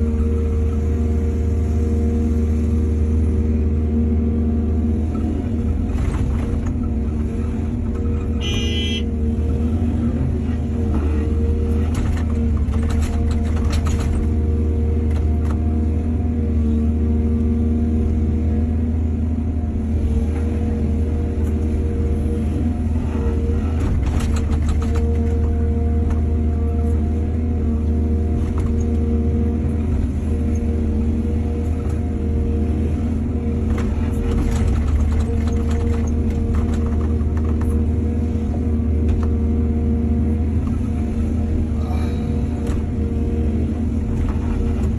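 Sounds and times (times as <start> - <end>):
diesel engine running under load: 0.0 - 44.9.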